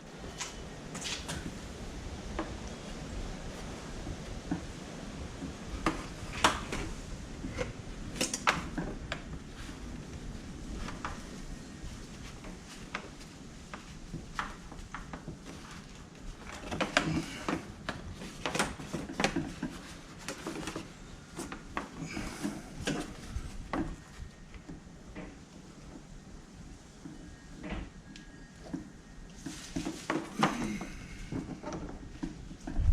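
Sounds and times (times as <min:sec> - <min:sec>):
parts and tools being handled: 0:04.5 - 0:10.0, 0:12.2 - 0:25.4.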